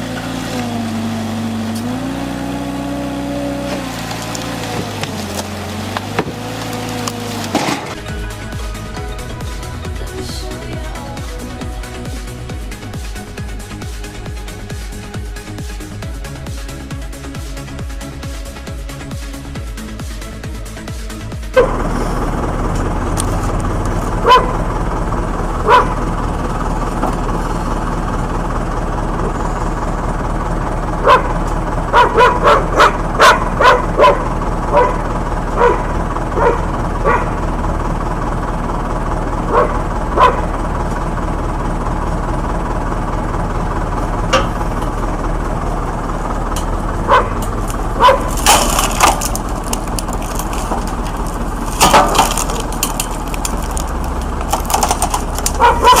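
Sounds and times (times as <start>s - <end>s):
low machine hum: 0.0s - 56.0s
dog barking: 21.6s - 21.8s, 24.2s - 24.6s, 25.6s - 26.0s, 31.0s - 37.4s, 39.5s - 40.5s, 47.0s - 47.4s, 48.0s - 48.4s, 55.6s - 56.0s.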